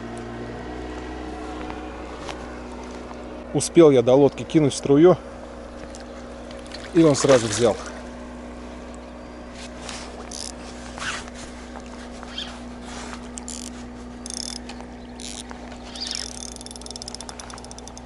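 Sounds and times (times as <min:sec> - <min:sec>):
steady low hum: 0:00.0 - 0:18.0
water splashes: 0:05.5 - 0:08.2
fishing reel clicking: 0:10.3 - 0:10.6, 0:13.4 - 0:18.0.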